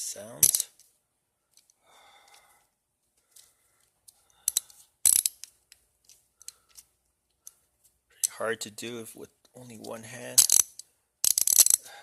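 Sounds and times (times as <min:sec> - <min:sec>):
hand ratchet clicking: 0:04.4 - 0:06.9, 0:10.4 - 0:11.9.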